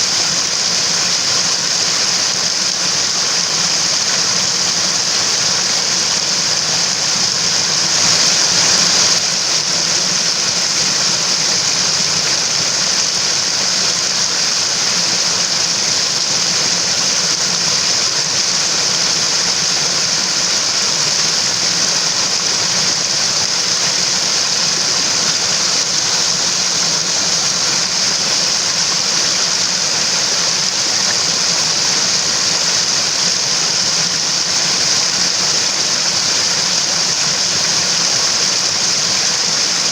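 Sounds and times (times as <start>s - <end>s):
mountain stream rushing: 0.0s - 39.9s.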